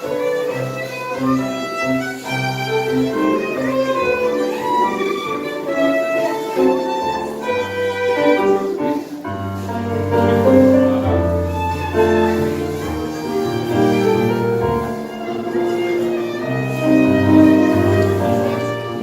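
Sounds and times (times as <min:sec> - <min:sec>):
piano: 0:00.0 - 0:19.0
violin melody: 0:00.0 - 0:19.0.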